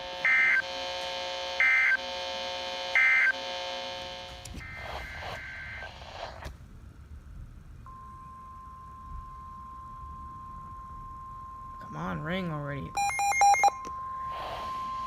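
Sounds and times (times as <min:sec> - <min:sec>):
buzzy data bursts: 0:00.0 - 0:06.5, 0:11.0 - 0:15.0
steady electrical buzz: 0:00.0 - 0:15.0
faint steady tone: 0:04.6 - 0:15.0.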